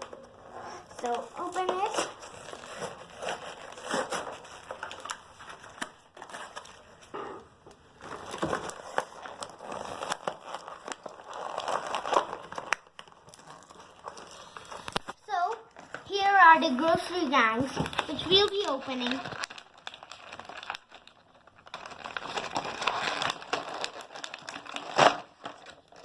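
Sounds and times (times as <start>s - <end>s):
toy packaging crinkling and tearing: 0.0s - 7.1s, 7.9s - 26.0s.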